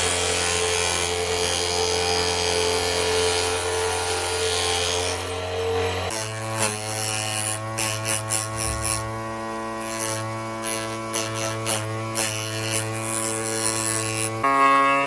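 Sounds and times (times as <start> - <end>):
sustained drone chord music: 14.4 - 15.0.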